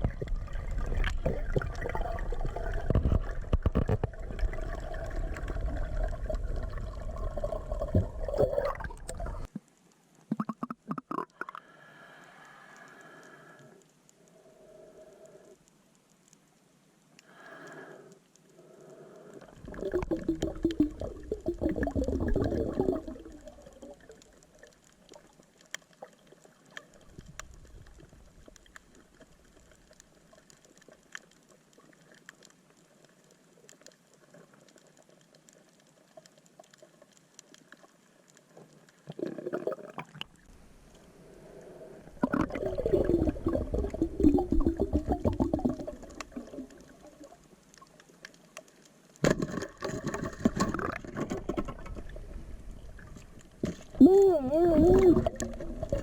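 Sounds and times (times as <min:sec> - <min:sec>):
water rushing underwater: 0:00.0 - 0:09.5, 0:19.3 - 0:25.4, 0:39.0 - 0:48.1, 0:49.2 - 0:56.0
faint clicks: 0:08.9 - 0:21.0, 0:23.3 - 0:39.2, 0:45.9 - 0:49.2.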